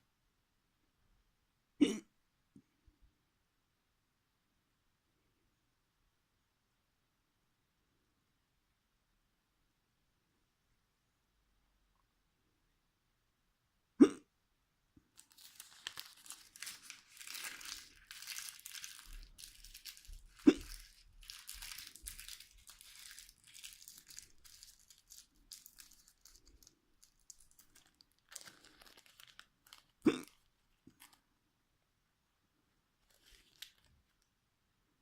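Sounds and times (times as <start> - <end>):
person hiccupping: 1.8 - 2.1, 14.0 - 14.3, 20.0 - 21.0, 30.0 - 30.5
crinkling and rustling: 15.0 - 31.3, 33.0 - 34.3.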